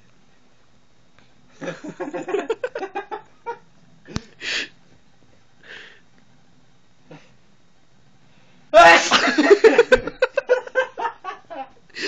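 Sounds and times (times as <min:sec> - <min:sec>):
person laughing: 0:01.6 - 0:04.2, 0:08.8 - 0:11.8.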